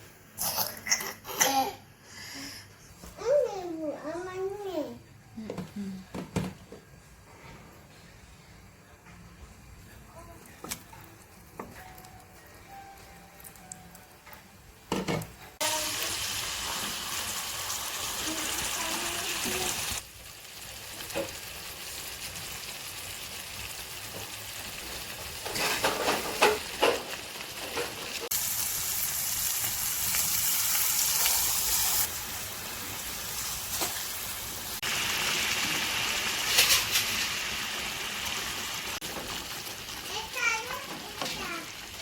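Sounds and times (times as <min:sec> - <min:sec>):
food sizzling in oil: 0:15.6 - 0:42.0
utensil clatter and stirring: 0:25.3 - 0:28.1.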